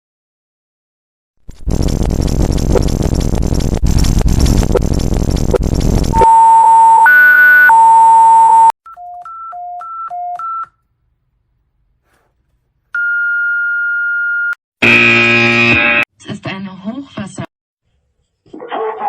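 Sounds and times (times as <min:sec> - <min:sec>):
steady high beep tone: 0:06.1 - 0:08.7.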